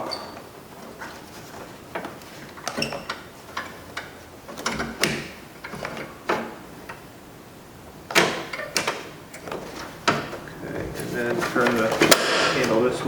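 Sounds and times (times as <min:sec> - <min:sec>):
door handle clicks and rattles: 0:08.1 - 0:10.4.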